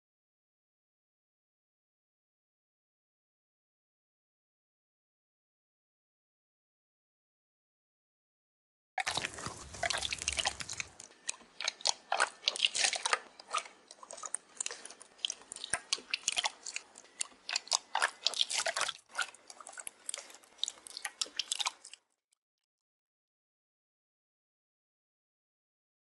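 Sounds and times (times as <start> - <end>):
slime wet sticky clicks: 9.1 - 22.0.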